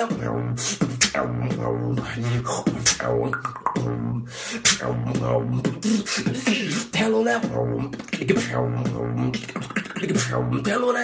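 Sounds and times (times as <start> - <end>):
beatboxing vocal percussion: 0.0 - 11.0
voice-made melodic notes: 2.8 - 5.2.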